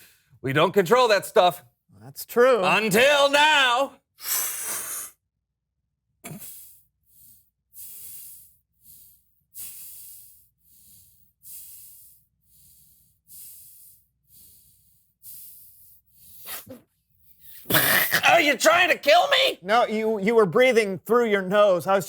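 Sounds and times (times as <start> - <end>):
person breathing through the nose: 4.2 - 5.2, 6.3 - 17.7.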